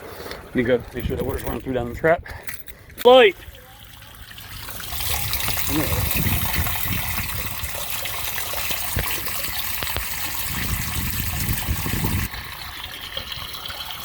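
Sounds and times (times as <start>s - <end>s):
sewage water rushing and splashing: 3.1s - 14.0s.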